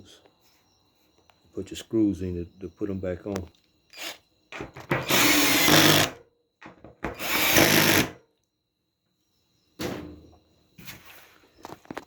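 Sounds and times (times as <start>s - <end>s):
power drill driving screws: 3.9s - 4.2s, 4.9s - 6.2s, 7.1s - 8.2s.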